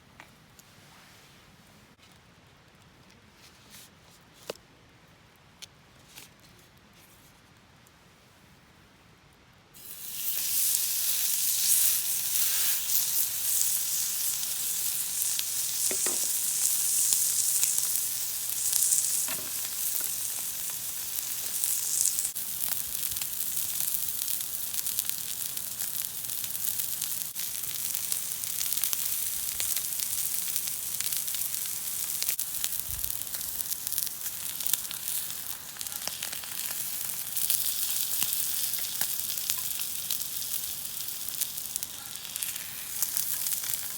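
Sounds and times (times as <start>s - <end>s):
food sizzling in a pan: 9.8s - 43.9s.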